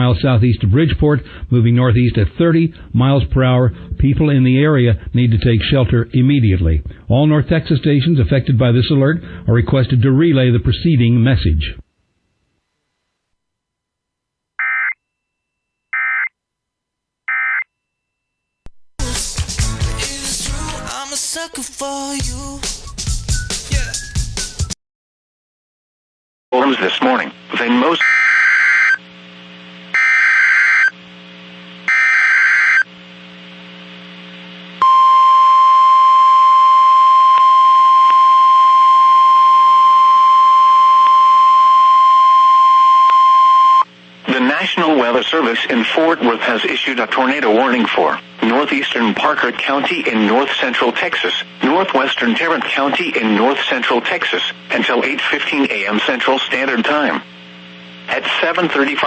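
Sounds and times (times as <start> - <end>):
buzzing digital data tones: 31.9 - 32.9
steady single-pitch alert tone: 34.8 - 43.8.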